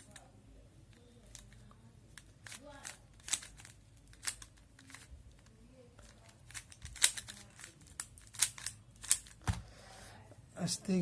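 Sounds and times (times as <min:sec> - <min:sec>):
plastic puzzle cube clicking: 0:00.9 - 0:09.5.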